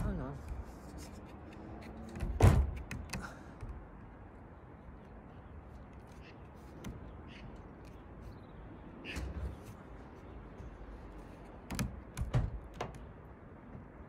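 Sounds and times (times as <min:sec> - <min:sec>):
heavy thump on van body: 0:02.3 - 0:02.8.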